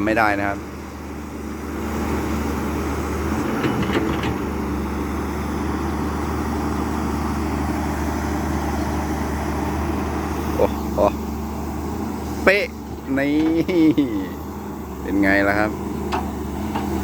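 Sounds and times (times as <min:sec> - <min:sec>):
excavator diesel engine running: 0:00.0 - 0:17.0
light metallic clanks: 0:16.0 - 0:17.0.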